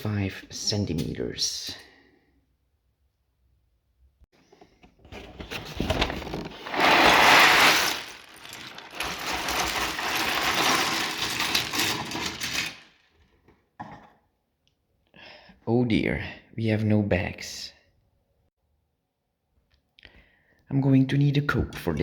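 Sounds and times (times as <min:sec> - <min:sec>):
plastic pieces rattling in a box: 0:05.4 - 0:13.0.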